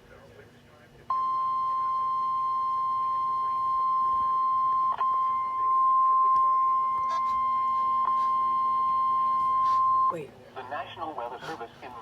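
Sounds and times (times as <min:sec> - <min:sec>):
piercing alarm tone through radio: 0:01.2 - 0:10.2.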